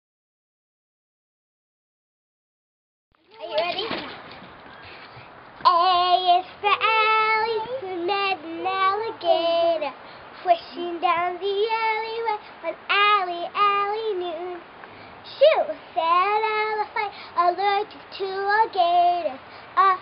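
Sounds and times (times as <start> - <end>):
child singing: 3.4 - 4.1, 5.6 - 14.7, 15.3 - 20.0.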